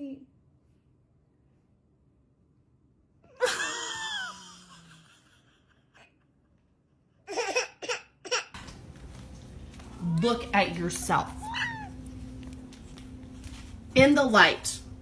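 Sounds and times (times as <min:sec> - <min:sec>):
person laughing: 0:03.3 - 0:06.4.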